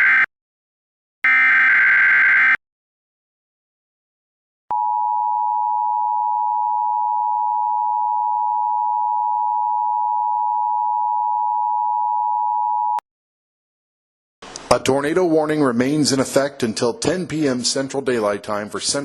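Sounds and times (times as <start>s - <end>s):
steady electronic alarm tone: 0.0s - 0.3s, 1.2s - 2.6s.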